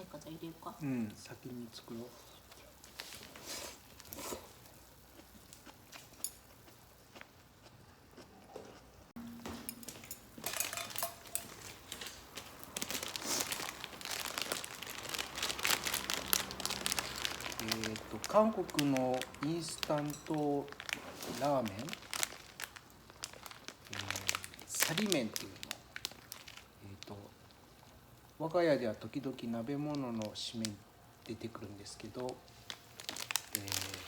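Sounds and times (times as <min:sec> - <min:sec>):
plastic wrapper crinkling: 0:02.4 - 0:04.8, 0:09.8 - 0:28.3, 0:29.3 - 0:34.0.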